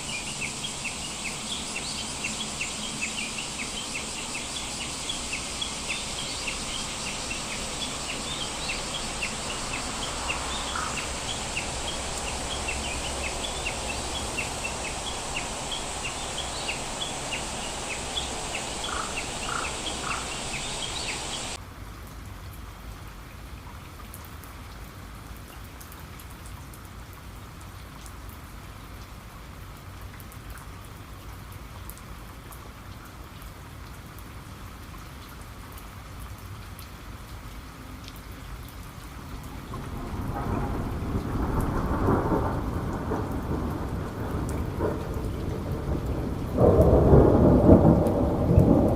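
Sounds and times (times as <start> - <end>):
birds chirping rapidly: 0.0 - 21.6
rain falling: 0.0 - 48.9.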